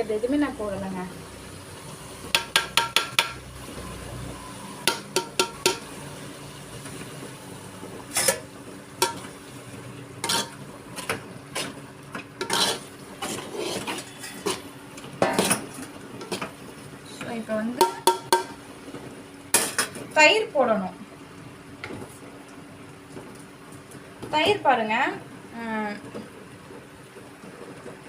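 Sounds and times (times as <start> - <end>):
spoon clinking and scraping pot: 4.8 - 5.8, 10.2 - 10.6, 12.4 - 14.6, 17.8 - 18.6.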